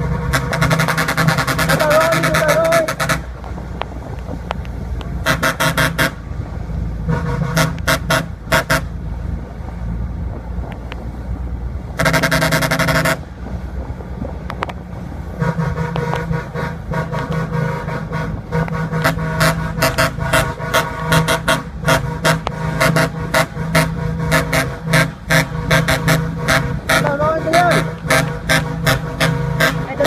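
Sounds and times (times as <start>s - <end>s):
engine running: 0.0s - 30.0s
vehicle horn tooting: 0.3s - 3.3s, 7.1s - 8.9s, 15.4s - 30.0s.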